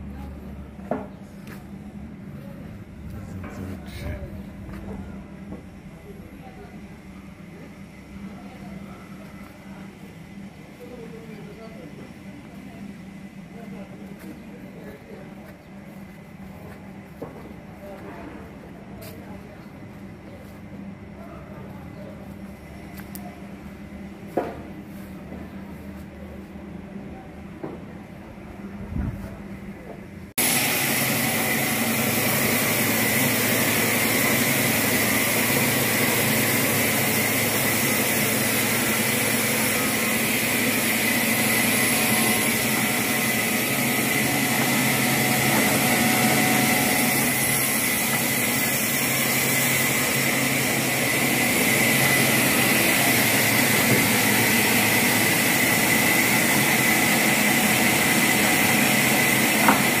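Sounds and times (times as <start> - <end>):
machine running with high whine: 30.2 - 60.0.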